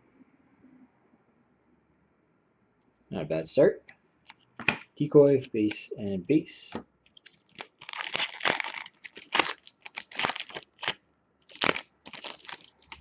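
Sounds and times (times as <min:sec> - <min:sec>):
packaging wrapper crinkling: 0:07.1 - 0:13.0.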